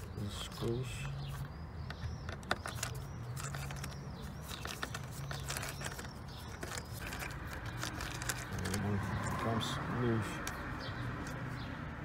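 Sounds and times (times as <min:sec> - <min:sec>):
small birds chirping: 0:00.0 - 0:12.0
screws tightening clicks and knocks: 0:01.8 - 0:09.4.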